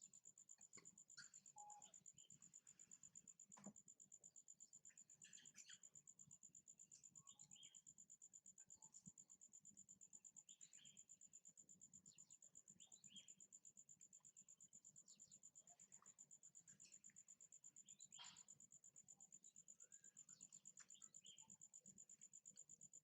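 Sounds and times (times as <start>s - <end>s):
insect chirring: 0.0s - 23.0s
faint short chirps: 1.2s - 2.4s, 17.8s - 18.6s.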